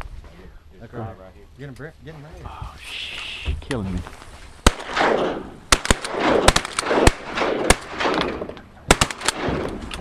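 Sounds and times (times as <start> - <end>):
shotgun fire with echo: 4.6 - 10.0.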